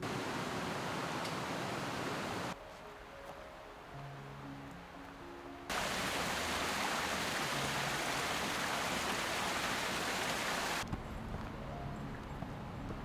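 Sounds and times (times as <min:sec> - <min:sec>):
rushing water: 0:00.0 - 0:02.6, 0:05.7 - 0:10.8.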